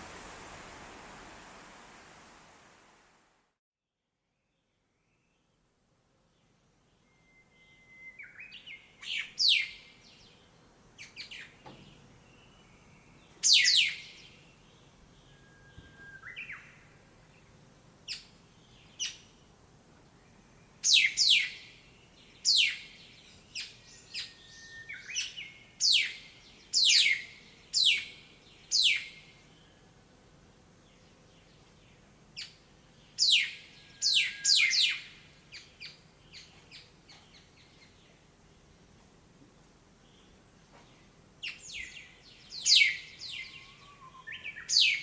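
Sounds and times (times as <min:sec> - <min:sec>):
songbirds chirping: 0:04.4 - 0:45.0
thin whistled bird notes: 0:06.9 - 0:09.7, 0:15.2 - 0:16.9, 0:22.4 - 0:27.2, 0:33.2 - 0:35.7, 0:41.5 - 0:45.0.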